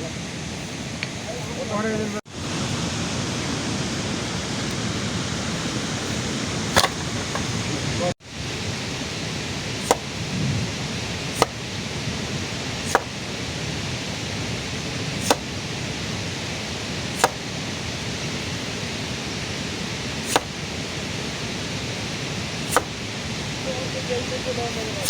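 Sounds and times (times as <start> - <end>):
steady rain: 0.0 - 6.7, 8.0 - 25.0
sharp clicks or knocks: 6.8 - 7.5, 9.8 - 10.1, 11.4 - 11.6, 12.9 - 13.2, 15.2 - 15.5, 17.2 - 17.4, 20.3 - 20.6, 22.7 - 23.0.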